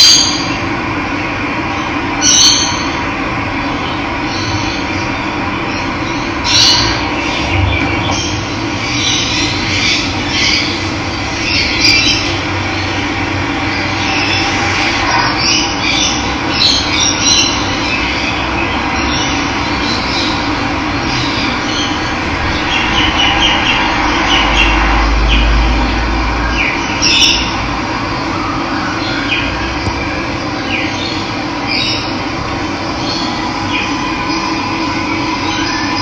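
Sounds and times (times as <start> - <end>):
birds chirping and calling: 4.3 - 13.0, 30.6 - 34.7
low rumble: 20.4 - 26.8, 30.4 - 36.0.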